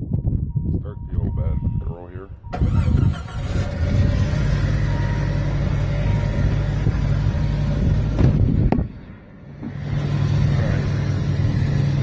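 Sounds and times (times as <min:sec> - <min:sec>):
car engine idling: 0:02.4 - 0:12.0.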